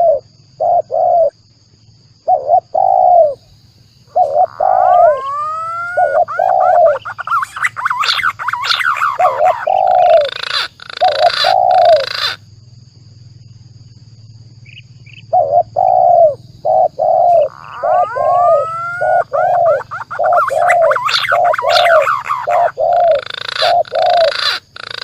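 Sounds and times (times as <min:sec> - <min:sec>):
doves cooing: 0:00.0 - 0:01.3, 0:02.3 - 0:03.4, 0:04.1 - 0:12.4, 0:15.3 - 0:25.0
pigeon whistles: 0:04.2 - 0:12.4, 0:15.4 - 0:25.0.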